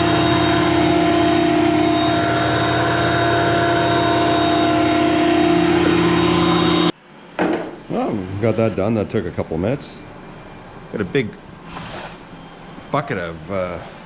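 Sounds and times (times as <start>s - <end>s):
thickness planer whining hum: 0.0s - 7.2s.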